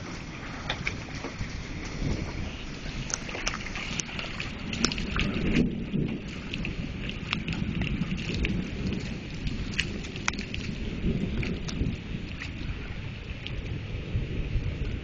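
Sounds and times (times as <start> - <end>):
low rumble: 0.0 - 15.0
rain falling: 0.0 - 15.0
sharp raindrops striking nearby: 0.7 - 15.0.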